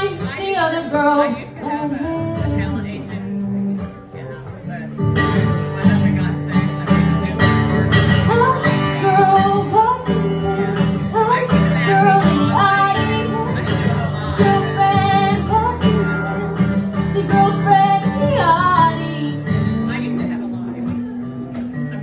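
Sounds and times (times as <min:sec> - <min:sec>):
girl singing: 0:00.0 - 0:03.3, 0:08.1 - 0:19.8
acoustic guitar strumming: 0:00.0 - 0:22.0.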